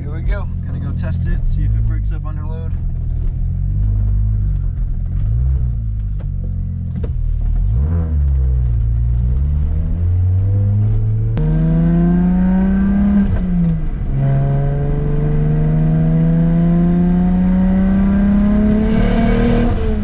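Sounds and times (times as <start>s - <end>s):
driver talking: 0.0s - 3.5s
car engine accelerating hard: 0.0s - 20.0s.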